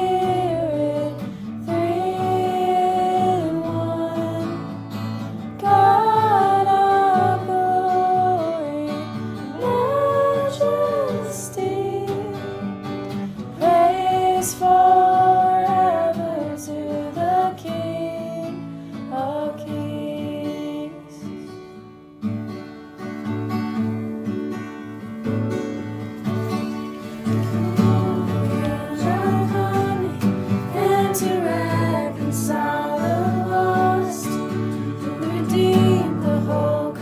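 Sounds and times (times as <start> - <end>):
acoustic guitar: 0.0 - 37.0
person singing long notes: 27.4 - 37.0.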